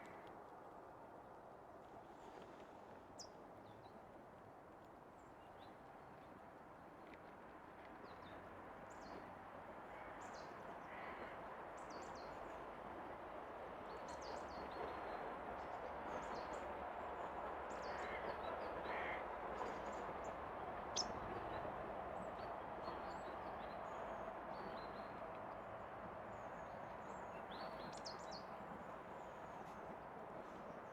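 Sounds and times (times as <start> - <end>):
outdoor background rush: 7.0 - 30.9.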